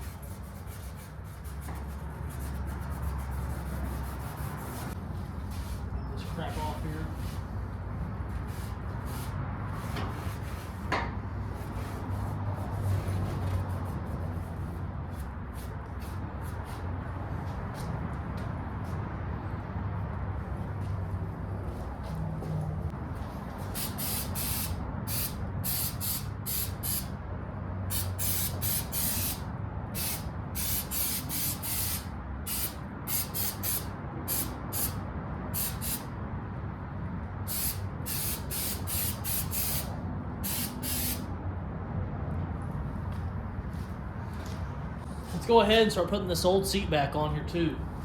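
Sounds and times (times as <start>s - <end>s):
spray paint can hissing: 23.6s - 27.1s, 27.9s - 35.0s, 35.6s - 36.1s, 37.5s - 41.3s.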